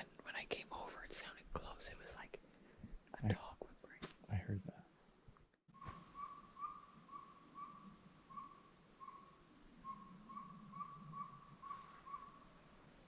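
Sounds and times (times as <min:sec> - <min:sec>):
owl hooting toots: 0:05.8 - 0:12.5.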